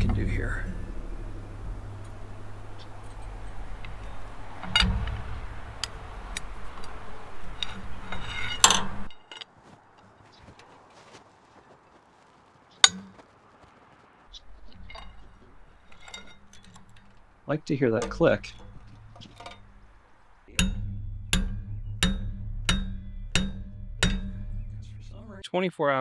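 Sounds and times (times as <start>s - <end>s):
low hum: 0.0s - 9.2s, 14.3s - 25.4s
wrench metallic clinks: 0.0s - 9.4s, 14.3s - 25.4s.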